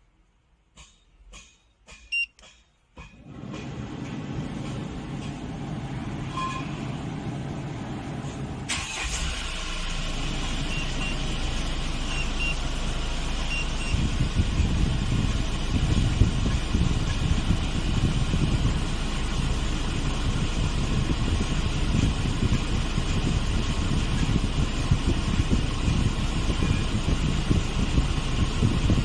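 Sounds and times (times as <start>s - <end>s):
short beeps: 2.1s - 2.4s
truck engine starting and running: 3.2s - 29.0s.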